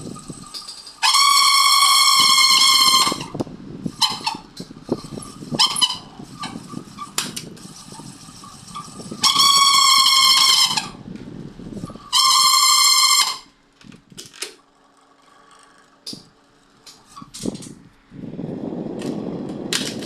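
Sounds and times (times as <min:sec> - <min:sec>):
irregular rattling clatter: 0:00.0 - 0:12.6
stand fan high-pitched squeal: 0:00.0 - 0:13.7, 0:15.2 - 0:20.0.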